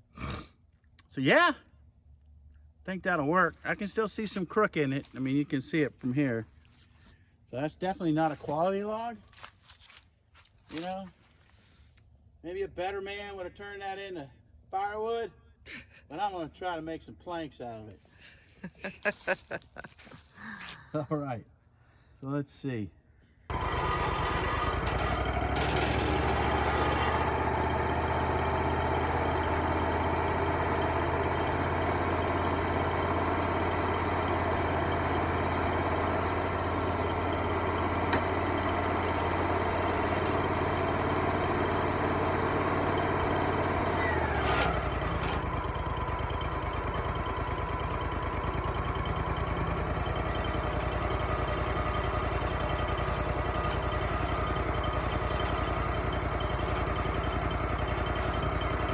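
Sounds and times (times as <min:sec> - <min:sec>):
saw blade whine: 0:23.5 - 0:58.9
sawmill engine hum: 0:23.5 - 0:58.9.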